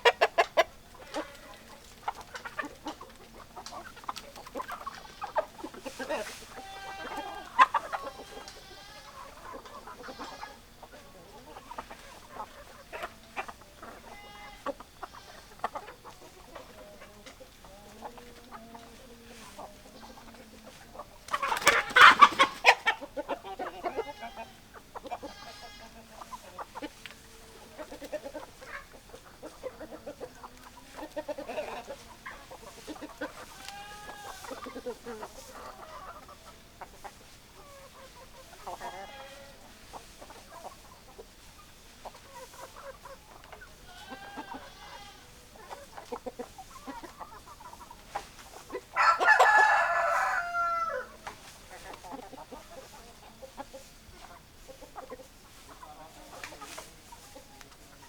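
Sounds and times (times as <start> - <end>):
chickens clucking: 0.0 - 58.0
loud chicken call: 19.3 - 26.7, 43.9 - 45.8, 48.8 - 51.4.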